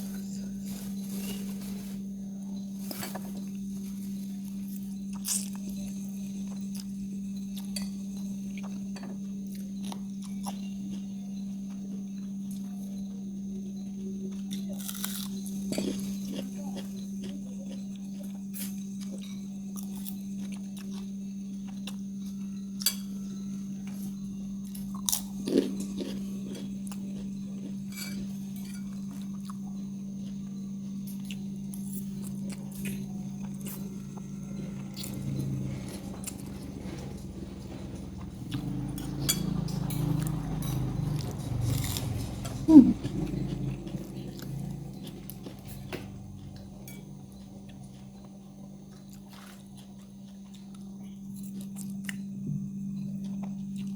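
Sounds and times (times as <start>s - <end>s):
steady low hum: 0.0s - 53.9s
person chewing food: 2.9s - 13.1s, 14.3s - 22.6s, 23.8s - 52.3s
food crunches: 14.5s - 17.4s, 24.8s - 27.8s.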